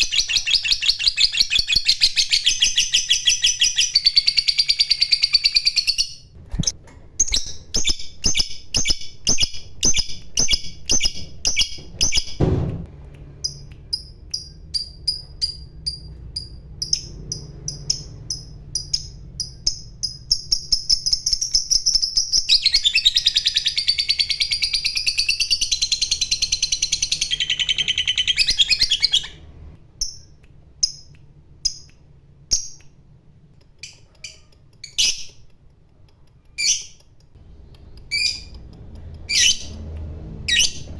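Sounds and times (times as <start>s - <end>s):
lovebird chirping and trilling: 0.0s - 12.4s, 13.4s - 31.9s, 33.8s - 35.5s, 36.6s - 37.0s, 37.8s - 39.8s, 40.4s - 40.9s
knock: 11.2s - 12.9s.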